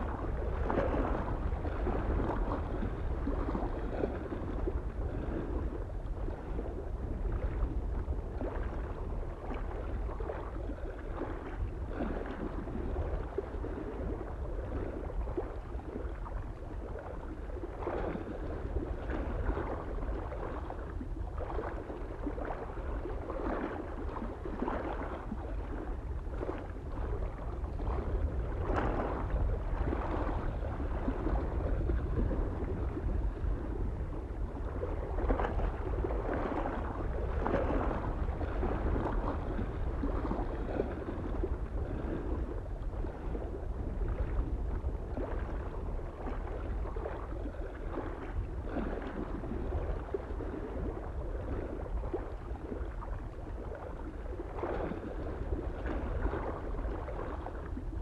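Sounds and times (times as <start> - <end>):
small waves lapping: 0.0 - 58.0
wind rumble: 0.0 - 58.0.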